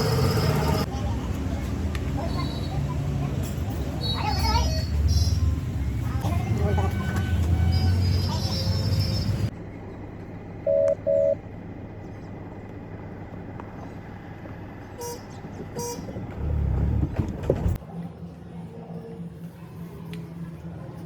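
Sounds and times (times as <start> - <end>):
low traffic hum: 0.0 - 21.0
short electronic beeps: 10.7 - 11.4
vehicle horn toots: 15.0 - 16.1.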